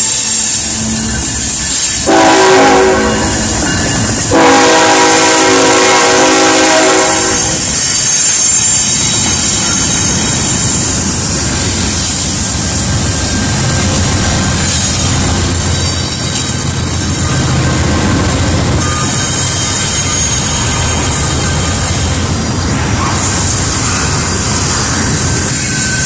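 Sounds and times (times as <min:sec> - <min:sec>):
passing train rumble: 0:00.0 - 0:26.0
train horn blowing: 0:02.0 - 0:03.6, 0:04.2 - 0:08.8.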